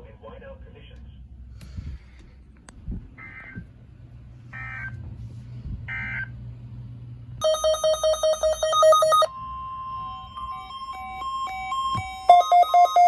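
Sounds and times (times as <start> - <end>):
electronic beeps: 7.4 - 9.3, 10.1 - 13.0.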